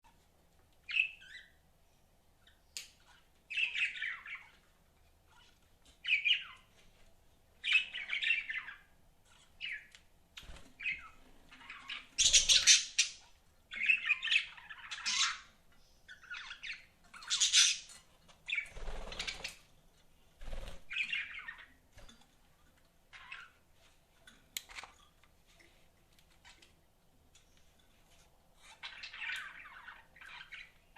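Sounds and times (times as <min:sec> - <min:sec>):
budgerigars chirping and squawking: 0:03.0 - 0:04.7, 0:05.3 - 0:06.7, 0:07.6 - 0:19.6, 0:20.5 - 0:21.8, 0:23.1 - 0:23.6, 0:28.6 - 0:30.9.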